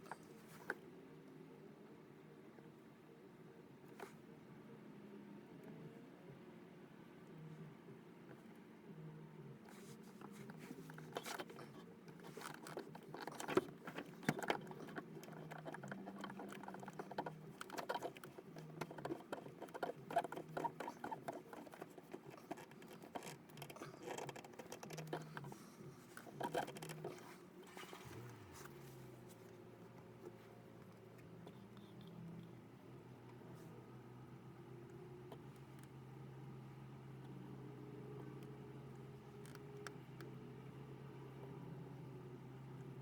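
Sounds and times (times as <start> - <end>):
hands scraping and tapping fittings: 9.7 - 27.9.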